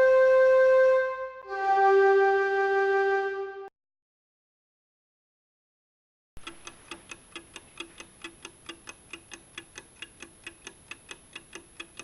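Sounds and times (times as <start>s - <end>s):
clock ticking: 6.4s - 12.0s.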